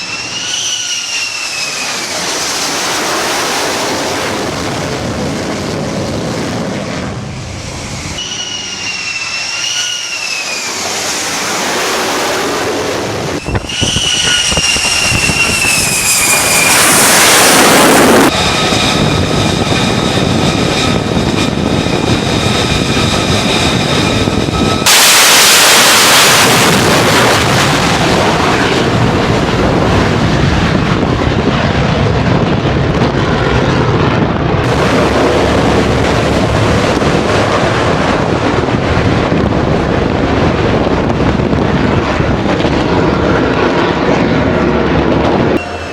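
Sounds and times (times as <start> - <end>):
jet engine roar passing: 0.0 - 45.9
steady high tones: 8.1 - 10.8, 45.6 - 45.9.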